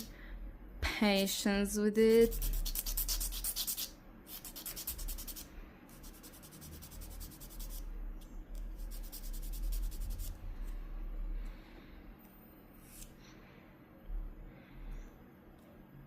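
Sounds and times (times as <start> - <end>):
nail file scratching: 2.2 - 7.8, 8.5 - 10.4.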